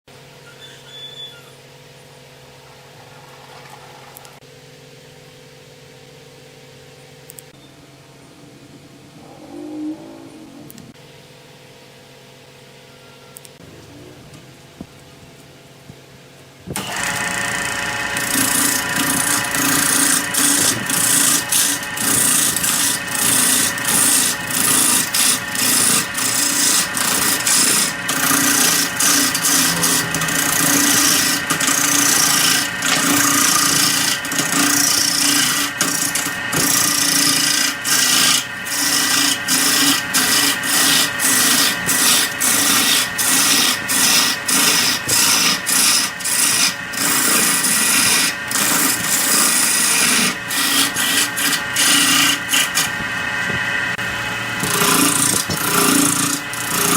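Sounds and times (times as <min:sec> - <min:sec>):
lathe tool cutting wood: 0:16.8 - 0:56.9
wood lathe humming: 0:16.8 - 0:56.9.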